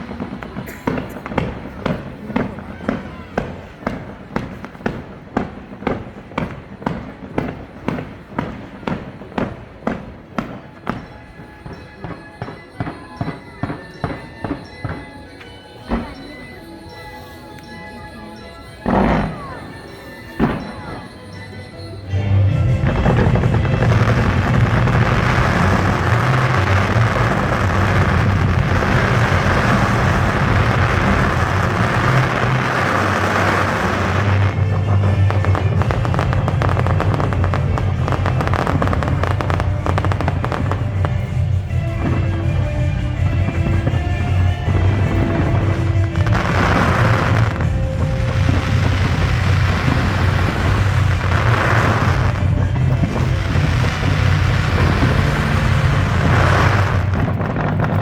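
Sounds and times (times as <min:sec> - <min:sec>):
fireworks bangs: 0:00.0 - 0:16.4, 0:18.8 - 0:21.5, 0:22.4 - 0:58.0.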